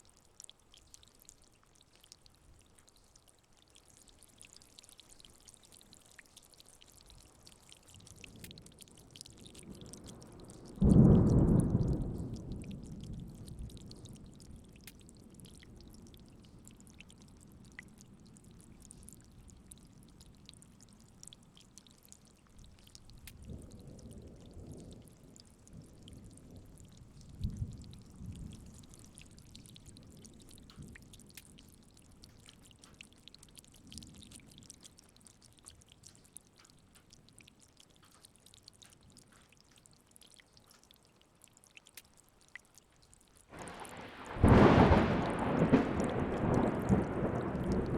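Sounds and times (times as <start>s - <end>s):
rain falling: 0.0s - 47.9s
water drips: 0.0s - 47.9s
distant thunder rumbling: 43.6s - 47.9s
thunderclap: 43.6s - 47.9s.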